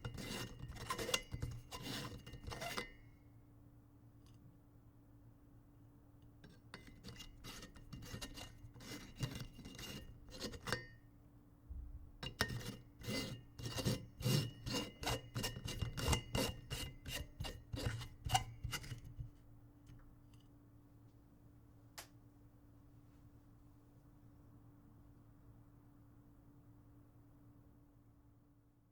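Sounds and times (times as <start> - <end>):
light bulb scraping in socket: 0.1 - 2.9
faint low hum: 1.7 - 14.0.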